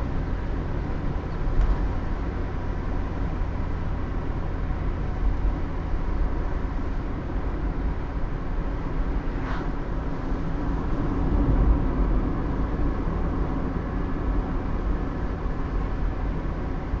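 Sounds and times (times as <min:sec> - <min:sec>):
vehicle rumble on road: 0:00.0 - 0:17.0.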